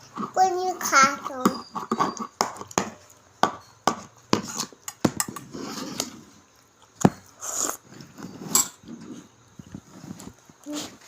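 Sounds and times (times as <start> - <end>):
plates clicking and knocking: 1.0 - 6.2
rustling: 7.4 - 11.0.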